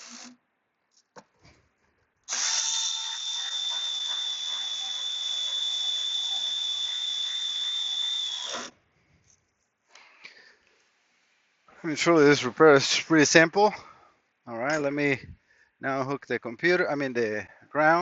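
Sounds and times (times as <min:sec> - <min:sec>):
power driver motor whining: 0:02.3 - 0:08.7.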